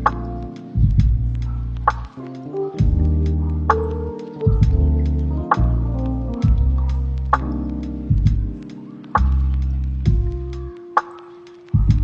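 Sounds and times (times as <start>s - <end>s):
background music with percussion: 0.8s - 2.2s, 2.8s - 5.7s, 10.1s - 12.0s.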